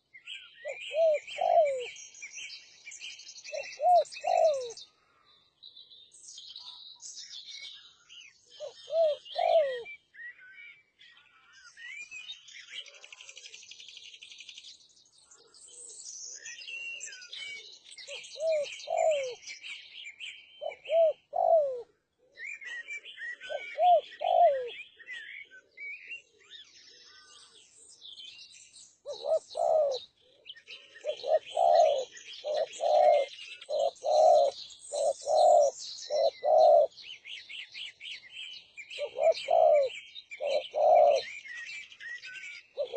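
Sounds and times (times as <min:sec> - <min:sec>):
small birds chirping: 0:00.0 - 0:42.9
dove cooing: 0:00.6 - 0:01.9, 0:03.6 - 0:04.8, 0:08.6 - 0:10.0, 0:17.4 - 0:19.4, 0:20.6 - 0:25.2, 0:29.0 - 0:37.4, 0:38.9 - 0:41.4.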